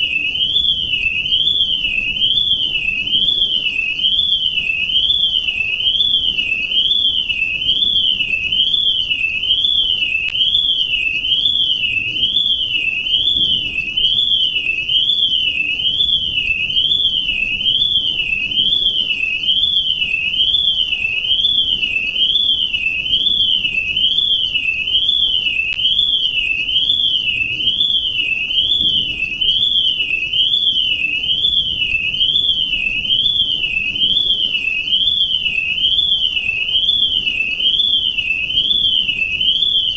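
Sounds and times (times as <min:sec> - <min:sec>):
electronic alarm warbling: 0:00.0 - 0:39.9.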